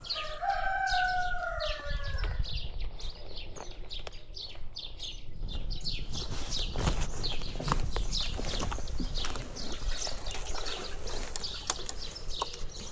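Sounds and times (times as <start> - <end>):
birds chirping: 0.0 - 12.9.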